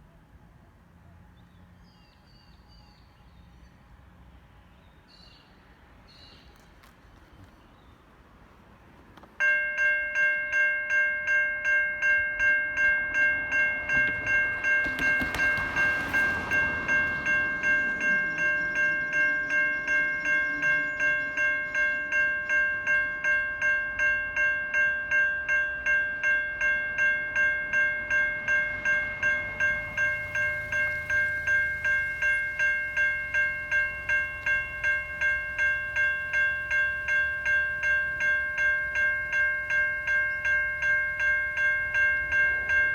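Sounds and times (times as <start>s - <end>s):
level-crossing bells ringing: 9.4s - 42.9s
rushing noise: 13.4s - 21.6s.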